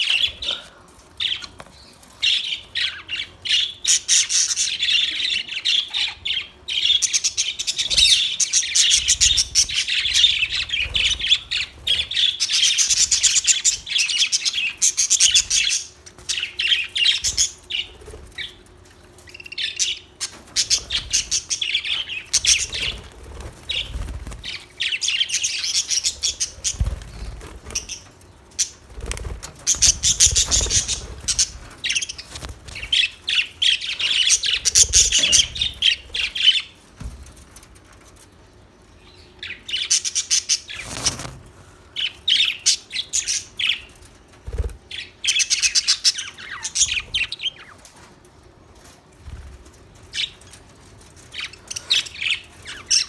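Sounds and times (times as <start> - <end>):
budgerigars chattering: 2.2 - 18.5, 19.4 - 36.7.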